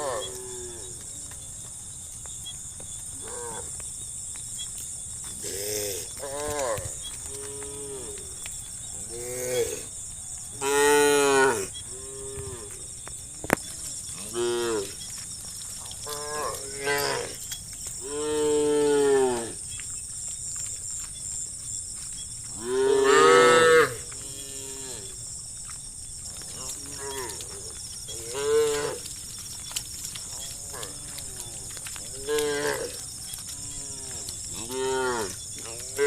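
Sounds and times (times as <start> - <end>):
cattle mooing: 22.6 - 25.2, 30.4 - 36.0.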